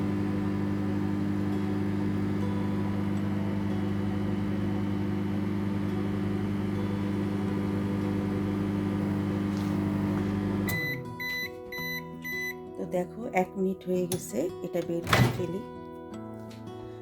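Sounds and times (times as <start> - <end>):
microwave oven humming: 0.0 - 12.5
microwave beeping: 0.0 - 12.7, 14.1 - 15.6.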